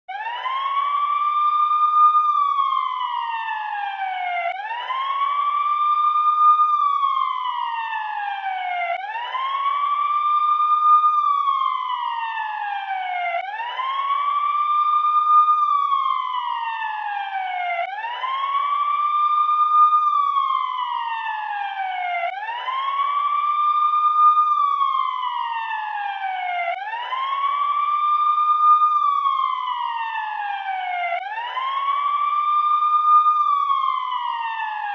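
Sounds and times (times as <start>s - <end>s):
emergency siren wailing: 0.1s - 34.9s.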